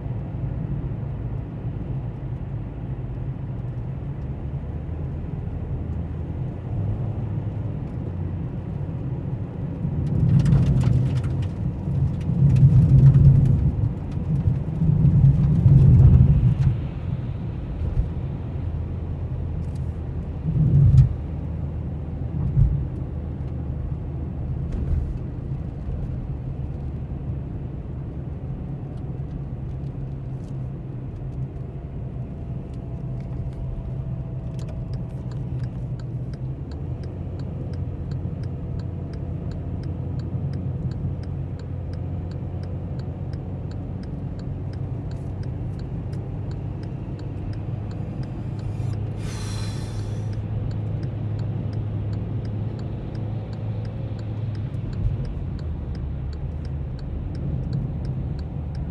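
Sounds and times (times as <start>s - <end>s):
motor vehicle rumble: 0.0s - 58.9s
hissing rush: 49.2s - 50.3s.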